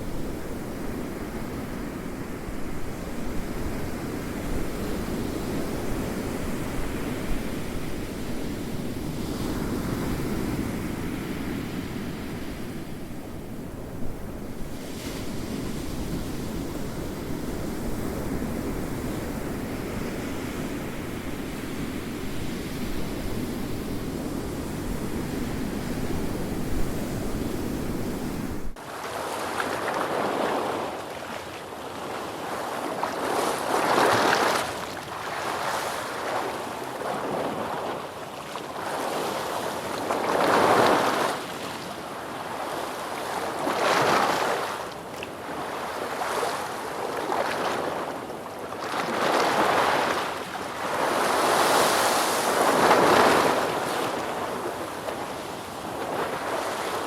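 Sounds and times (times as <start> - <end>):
ocean surf waves: 24.4 - 57.0.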